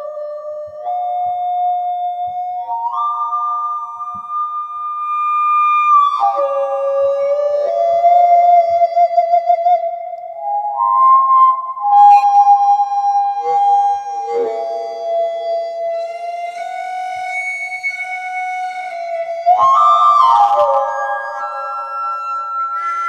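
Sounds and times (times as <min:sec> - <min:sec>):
whistle-like feedback tones: 0:10.4 - 0:23.0.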